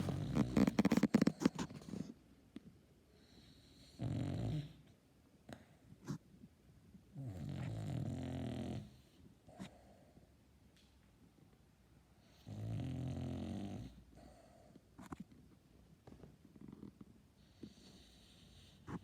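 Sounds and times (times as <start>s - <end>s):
dog snoring: 0.0s - 2.1s, 3.2s - 4.9s, 7.2s - 9.9s, 12.2s - 15.2s, 16.6s - 19.0s.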